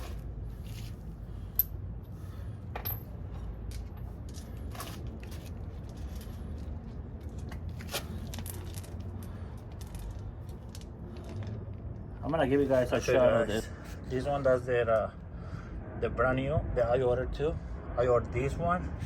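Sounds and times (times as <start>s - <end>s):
steady low hum: 0.0s - 19.0s
metal hardware clicking and clinking: 2.8s - 4.5s.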